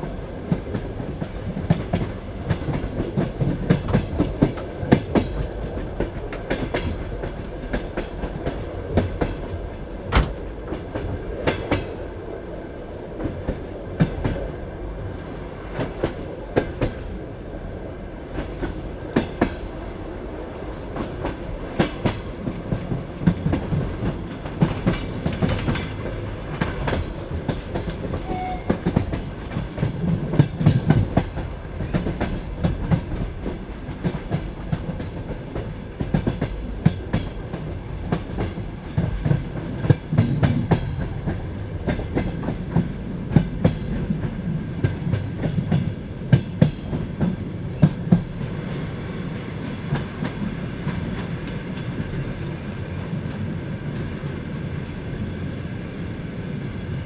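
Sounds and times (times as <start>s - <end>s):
train steady rumble: 0.0s - 57.0s
train wheels clacking over rail joints: 0.5s - 12.0s, 21.0s - 48.2s.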